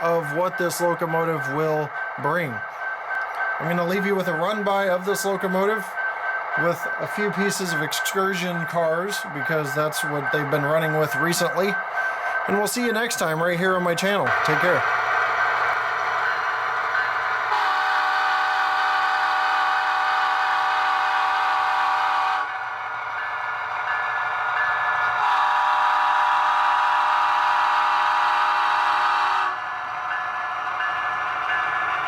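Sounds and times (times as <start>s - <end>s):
model train diesel engine sound: 0.0s - 32.0s
multi-tone horn blasts: 17.6s - 22.5s, 25.2s - 29.6s.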